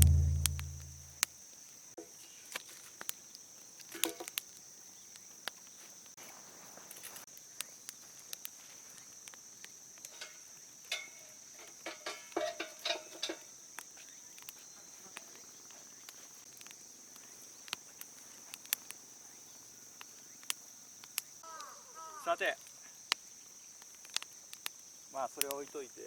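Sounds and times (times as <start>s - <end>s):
steady high-pitched hiss: 0.0s - 2.5s, 3.3s - 26.0s
campfire crackling: 22.3s - 26.0s.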